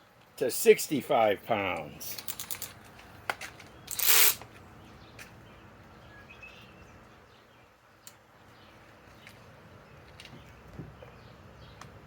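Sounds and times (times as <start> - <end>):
ratchet wrench clicking: 2.2 - 2.8, 3.9 - 4.4.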